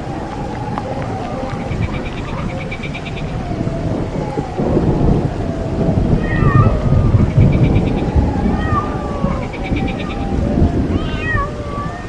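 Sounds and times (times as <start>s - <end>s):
thunder rumbling: 0.0s - 12.0s
cat yowling: 6.0s - 12.0s.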